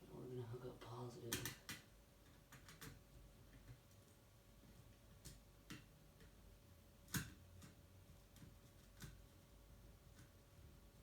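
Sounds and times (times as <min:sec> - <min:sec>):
faint clicks and taps of wiring: 0:01.3 - 0:06.4.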